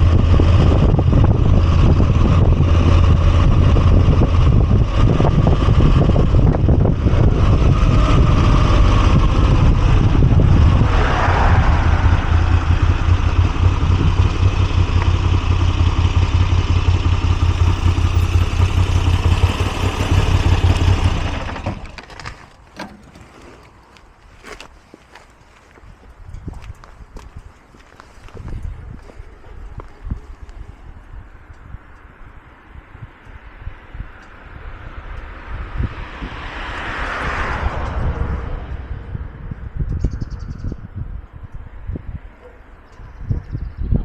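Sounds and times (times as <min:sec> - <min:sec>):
motorcycle engine running: 0:00.0 - 0:22.3.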